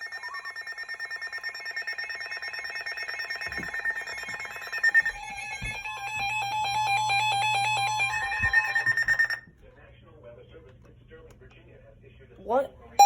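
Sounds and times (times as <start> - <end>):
fast pulsing alarm beep: 0.0 - 9.4.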